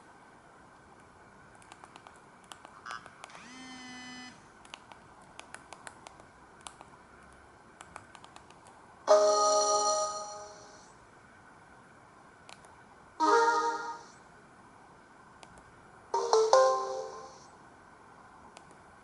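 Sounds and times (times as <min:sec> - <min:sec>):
phone ringtone: 0:09.1 - 0:10.8, 0:13.2 - 0:14.1, 0:16.2 - 0:17.5.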